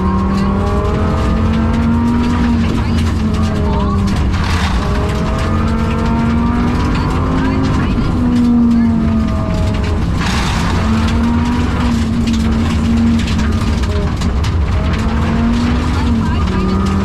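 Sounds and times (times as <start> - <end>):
car engine running hard: 0.0 - 17.0
road rumble: 0.0 - 17.0
rush of noise: 0.0 - 17.0.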